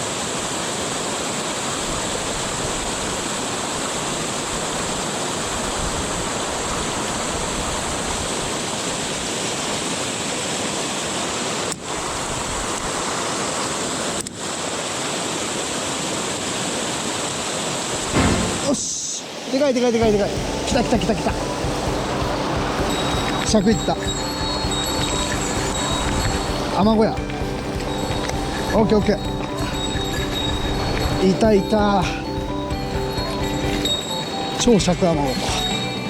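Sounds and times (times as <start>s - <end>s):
rushing river water: 0.0s - 36.0s.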